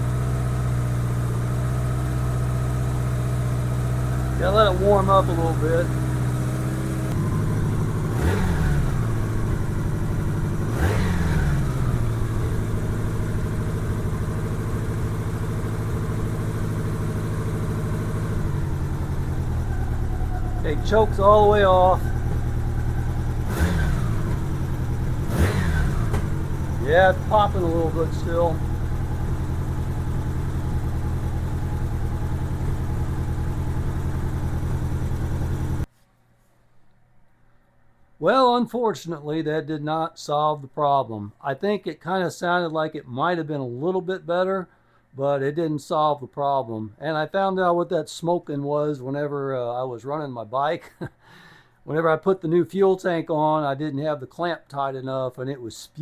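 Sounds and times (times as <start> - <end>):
motorcycle engine idling and revving: 0.0 - 35.9.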